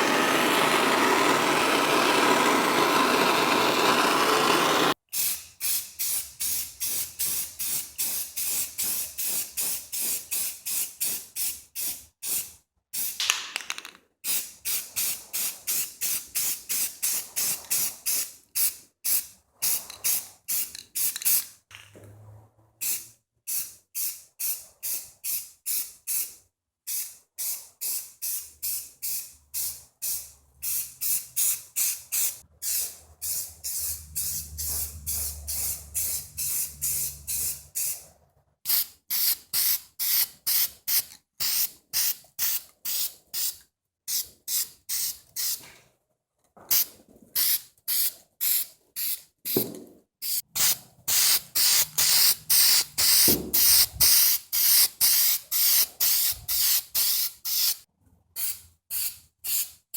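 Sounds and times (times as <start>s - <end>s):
abrasive scrubbing a hard surface: 0.0s - 5.0s.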